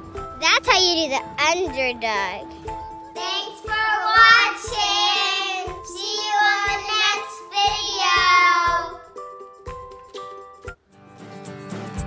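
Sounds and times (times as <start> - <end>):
background music: 0.0 - 12.0
child singing: 3.2 - 9.1.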